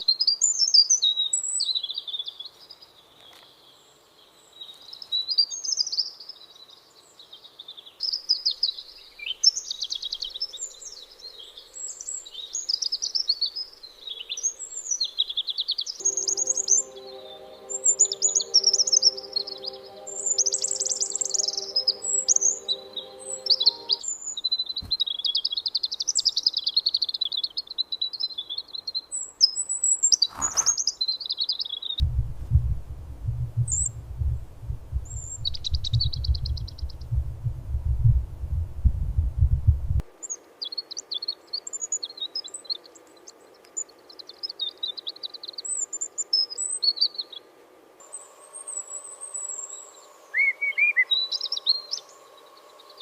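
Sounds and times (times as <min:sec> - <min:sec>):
low rumble: 0:32.0 - 0:40.0.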